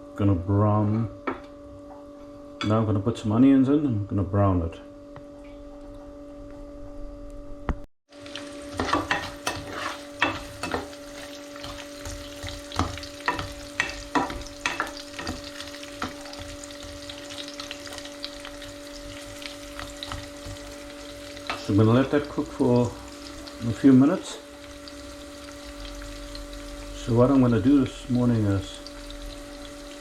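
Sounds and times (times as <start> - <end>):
onions sizzling in hot oil: 8.1 - 30.0
utensil scraping a pan: 8.7 - 18.0.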